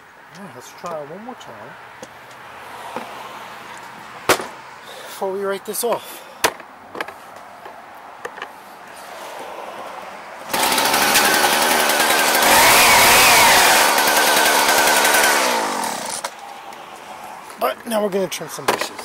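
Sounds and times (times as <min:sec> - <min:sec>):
hedge trimmer engine running: 0:10.5 - 0:16.3.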